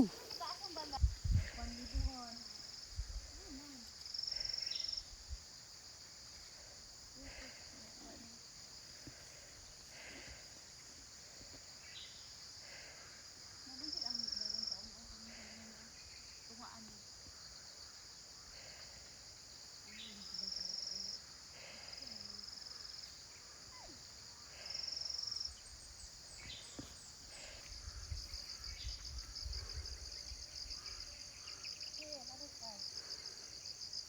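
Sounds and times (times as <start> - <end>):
pulsing insect call: 0.0 - 34.0
shrill insect chorus: 0.0 - 34.0
fast insect trill: 21.9 - 34.0.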